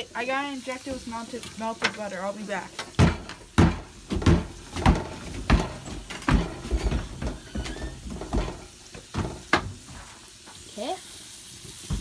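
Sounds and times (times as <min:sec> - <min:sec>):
footsteps walking: 0:02.8 - 0:10.1.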